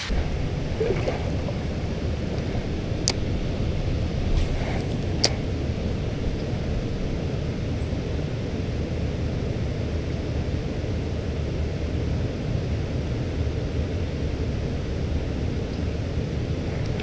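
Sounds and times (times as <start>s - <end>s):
river rapids rushing: 0.0s - 9.6s.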